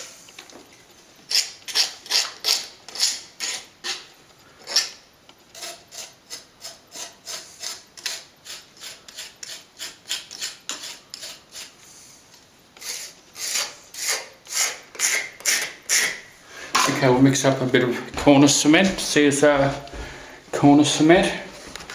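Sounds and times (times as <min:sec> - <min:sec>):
plastering tool scraping plaster: 0:01.3 - 0:16.3.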